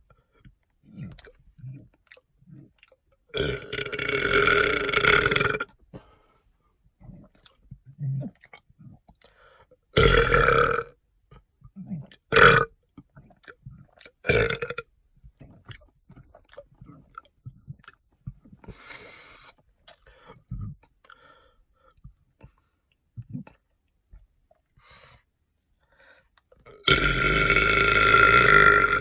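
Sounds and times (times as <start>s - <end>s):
faint mouth noises: 0.0s - 5.8s, 7.0s - 10.0s, 10.6s - 25.3s
person burping: 3.3s - 5.7s, 10.0s - 10.9s, 12.3s - 12.7s, 14.3s - 14.9s, 26.7s - 29.0s.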